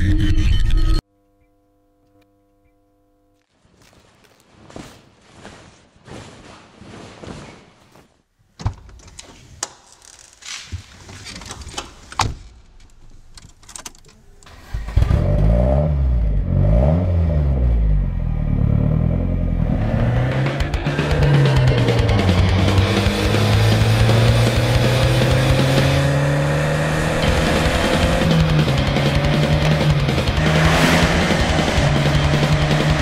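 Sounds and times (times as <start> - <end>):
car engine starting and revving: 14.5 - 33.0.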